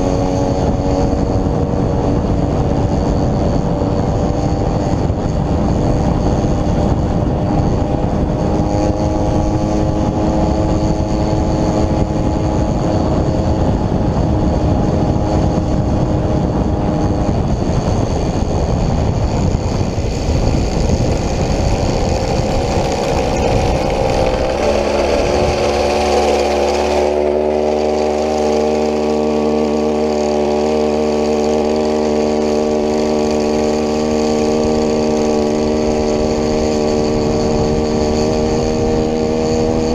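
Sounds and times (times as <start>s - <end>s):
two-stroke engine running: 0.0s - 39.9s
wind rumble on microphone: 0.0s - 39.9s.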